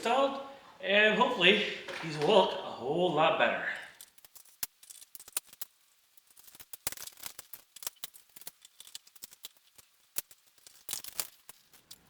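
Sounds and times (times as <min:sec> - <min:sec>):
plastic and metal parts clicking: 0:03.9 - 0:12.0.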